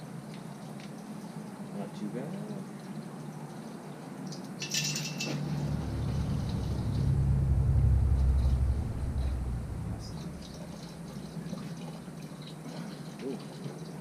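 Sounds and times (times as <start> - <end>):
metallic clink: 4.6 - 5.4
low engine rumble: 5.3 - 12.4.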